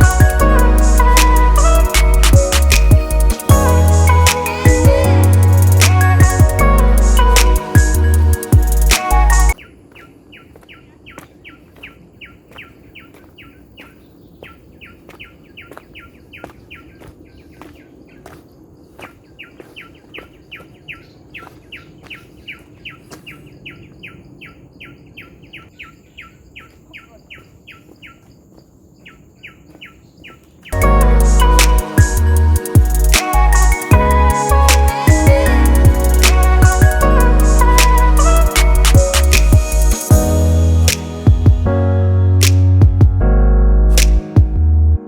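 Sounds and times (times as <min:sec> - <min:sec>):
faint high insect hum: 0:09.6 - 0:30.7.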